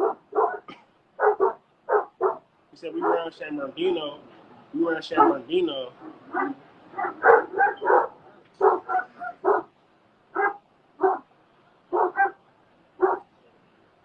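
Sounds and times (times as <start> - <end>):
dog barking: 0.0 - 2.4, 3.0 - 3.3, 5.1 - 9.7, 10.3 - 11.3, 11.9 - 12.4, 13.0 - 13.3.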